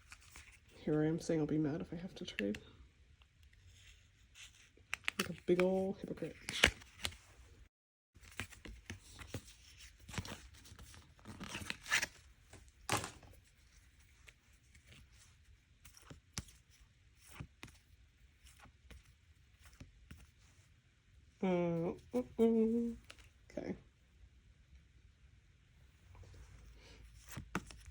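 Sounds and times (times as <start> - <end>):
light clicks of cards: 4.4 - 5.8.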